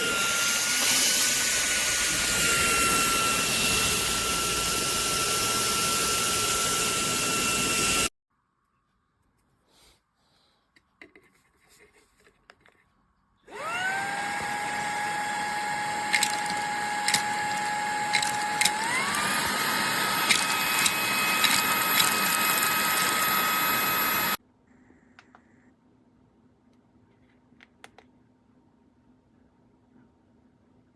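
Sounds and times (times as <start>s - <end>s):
handheld vacuum motor whine: 0.0s - 8.1s, 13.5s - 24.4s.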